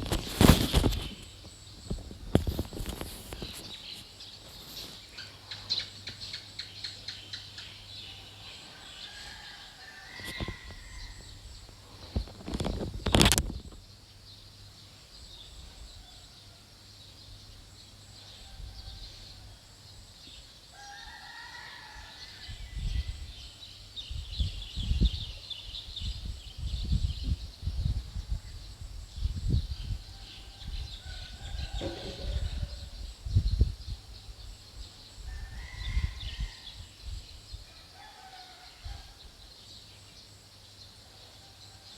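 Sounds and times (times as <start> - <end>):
high insect hiss: 0.0 - 41.9
low rumbling thumps: 31.4 - 33.8.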